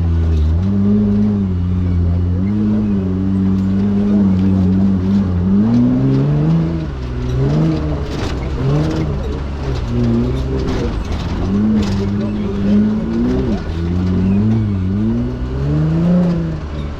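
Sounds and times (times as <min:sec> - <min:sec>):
engine revving up and down: 0:00.0 - 0:16.9.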